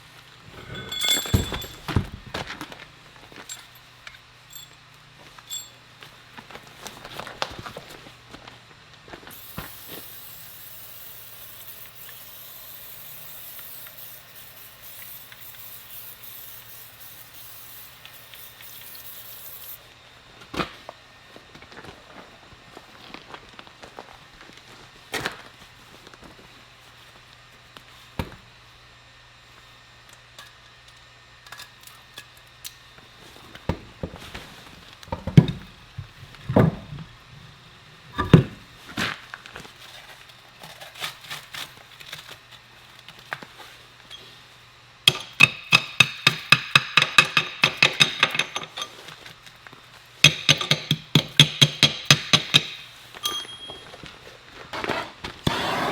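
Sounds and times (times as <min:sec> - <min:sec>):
tools and metal parts clinking: 0:00.5 - 0:02.5, 0:03.4 - 0:05.8, 0:45.1 - 0:49.4, 0:50.2 - 0:54.2
impact wrench hammering lug nut: 0:45.1 - 0:48.8, 0:50.2 - 0:53.8.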